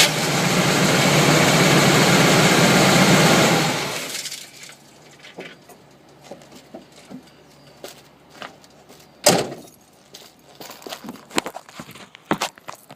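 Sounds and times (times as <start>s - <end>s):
loud sharp thump: 9.2s - 9.6s.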